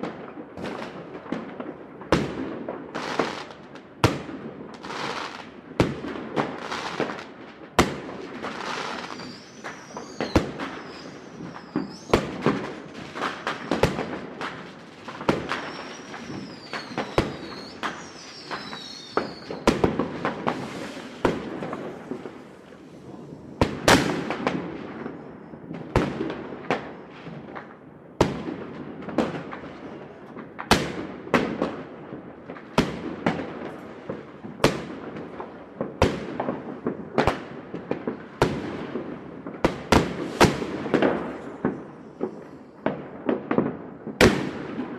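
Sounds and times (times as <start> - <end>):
fireworks bangs: 0.0 - 44.9
wavering high whistle: 9.0 - 12.2, 15.5 - 19.7.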